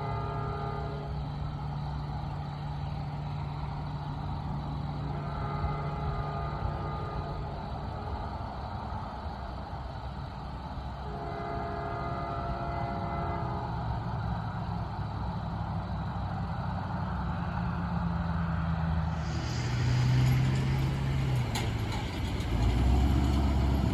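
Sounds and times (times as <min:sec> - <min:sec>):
locomotive horn chords: 0:00.0 - 0:01.6, 0:04.8 - 0:08.7, 0:11.0 - 0:14.1, 0:19.2 - 0:23.9
locomotive engine hum: 0:00.0 - 0:23.9.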